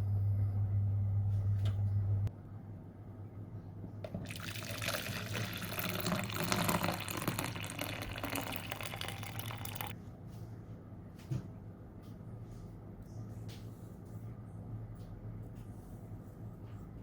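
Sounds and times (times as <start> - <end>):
water running from a tap: 4.2 - 9.9.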